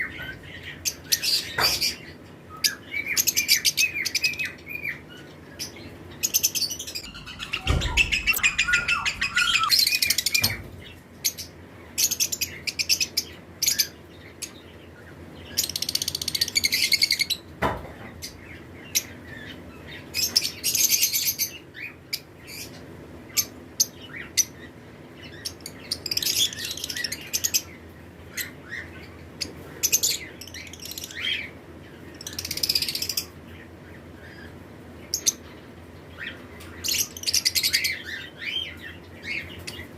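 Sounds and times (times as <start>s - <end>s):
lovebirds chirping: 0.0s - 17.5s.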